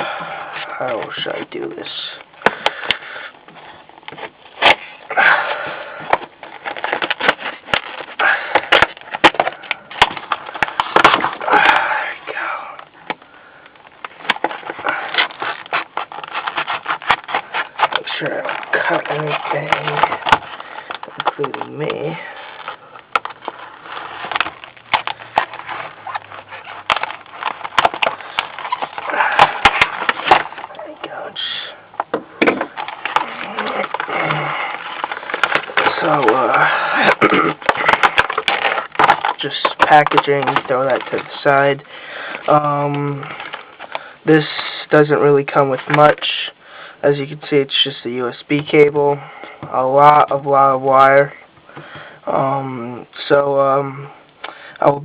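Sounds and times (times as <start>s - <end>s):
plastic crackling: 0.0s - 46.5s
plastic crinkling: 0.0s - 46.5s
knife cutting plastic packaging: 4.2s - 12.0s, 14.0s - 30.8s, 32.4s - 44.0s.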